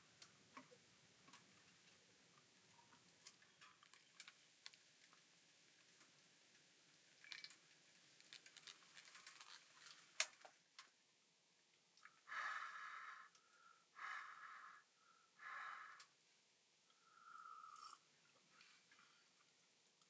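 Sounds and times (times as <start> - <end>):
person breathing out: 12.3 - 16.1.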